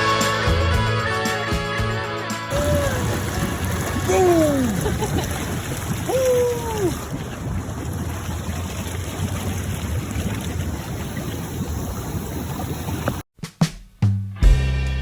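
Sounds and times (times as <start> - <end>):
steady rushing outdoor noise: 2.5 - 13.2.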